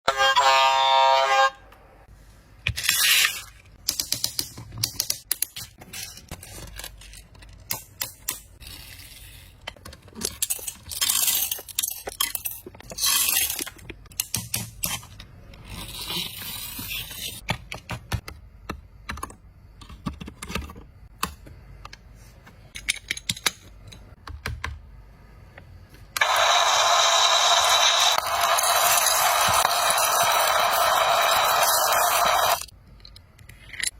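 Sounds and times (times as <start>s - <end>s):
toy truck clicking and rattling: 3.8s - 17.0s, 27.6s - 33.9s.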